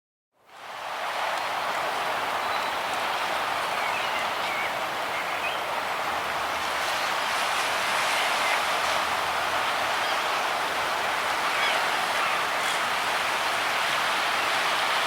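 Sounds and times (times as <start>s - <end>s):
small waves on shore: 0.4s - 15.0s.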